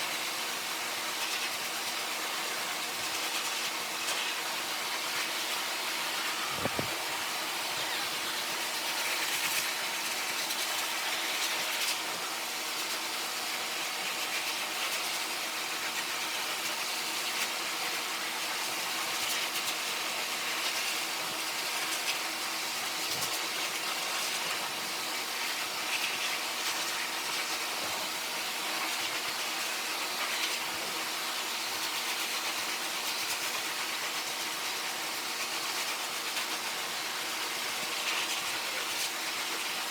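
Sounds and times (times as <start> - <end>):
blow dryer running: 5.4 - 10.3.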